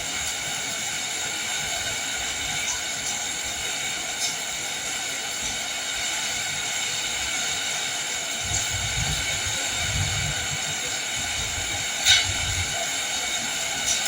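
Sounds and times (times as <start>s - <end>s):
heavy rain hissing: 0.0s - 14.0s.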